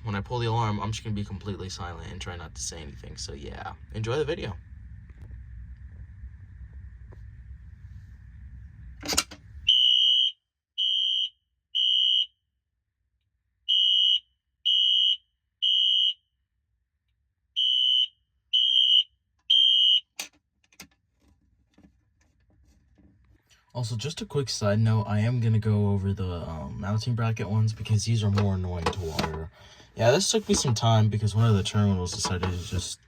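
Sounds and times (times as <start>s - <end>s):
fire alarm beeping: 9.7s - 12.3s, 13.7s - 16.2s, 17.6s - 20.2s.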